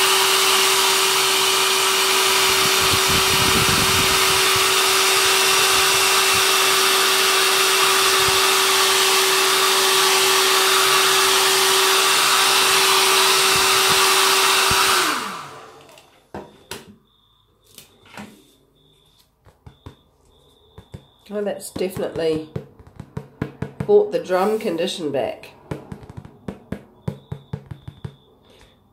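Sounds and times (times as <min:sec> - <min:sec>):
hair dryer blowing: 0:00.0 - 0:16.1.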